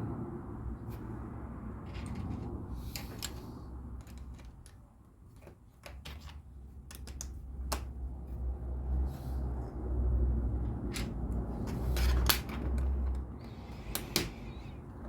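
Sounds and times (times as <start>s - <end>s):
plastic bricks clicking: 5.8s - 7.9s.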